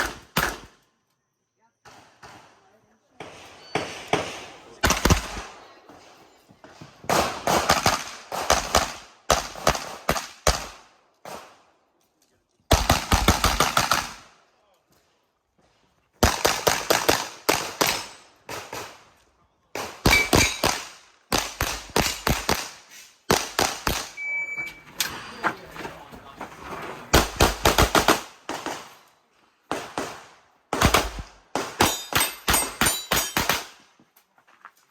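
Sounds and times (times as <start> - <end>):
pistol shots: 0.0 - 0.8, 3.2 - 5.7, 7.1 - 11.6, 16.2 - 19.0, 19.8 - 24.2, 27.2 - 29.0, 29.7 - 33.8.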